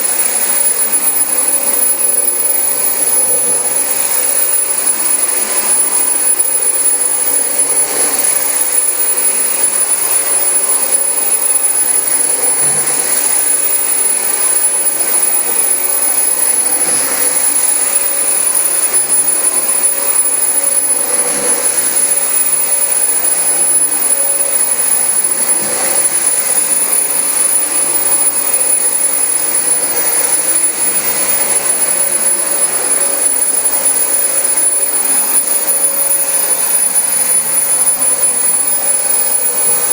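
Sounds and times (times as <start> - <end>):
vacuum cleaner running: 0.0 - 39.9.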